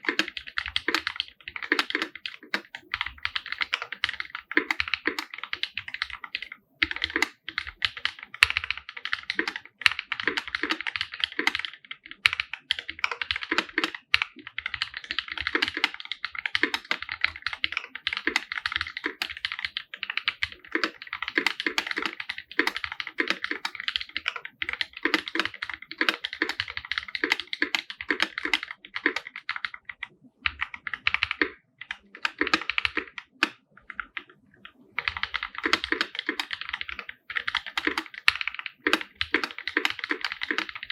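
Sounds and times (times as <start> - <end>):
fast typing on mechanical keyboard: 0.0 - 34.3, 35.0 - 40.9.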